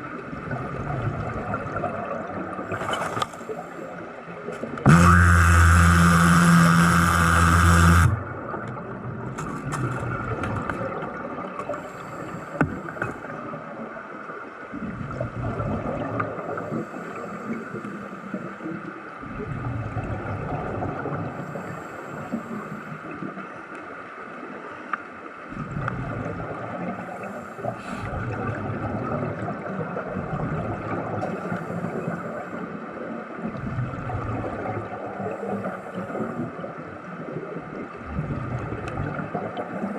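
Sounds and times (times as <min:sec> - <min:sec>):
muffled gurgling water rush: 0:00.0 - 0:39.9
loud electrical buzz: 0:04.9 - 0:08.2.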